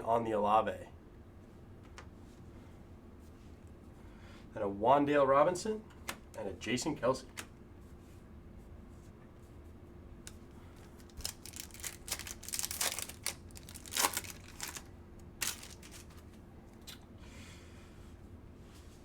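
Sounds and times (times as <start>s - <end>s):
foil wrapper tearing and crinkling: 10.9s - 16.4s.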